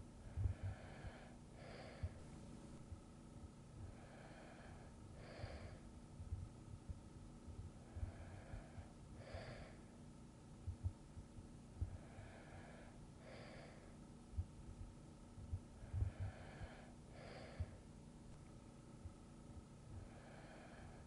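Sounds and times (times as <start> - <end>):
person breathing softly: 0.2 - 2.8, 3.8 - 5.9, 7.7 - 10.0, 11.8 - 14.0, 15.8 - 18.4, 19.9 - 21.0
faint low thumps: 6.2 - 8.2.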